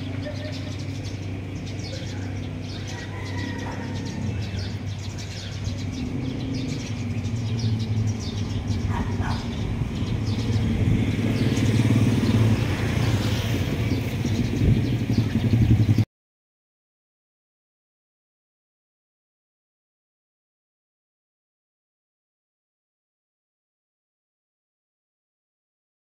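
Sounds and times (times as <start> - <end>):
engine droning: 0.0 - 16.0.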